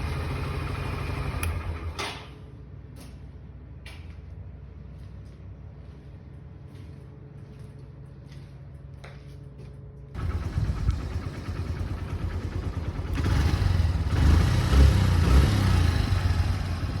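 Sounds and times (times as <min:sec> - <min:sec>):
motorcycle engine running: 0:00.0 - 0:02.0, 0:10.2 - 0:17.0.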